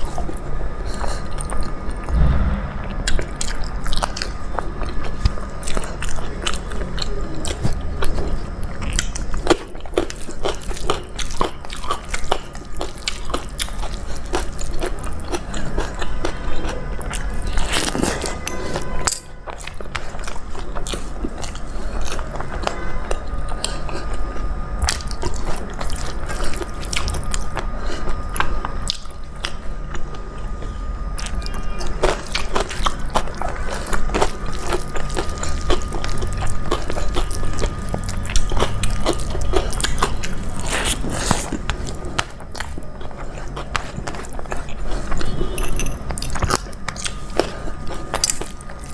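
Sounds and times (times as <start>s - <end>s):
person chewing with mouth clicks: 19.6s - 48.9s.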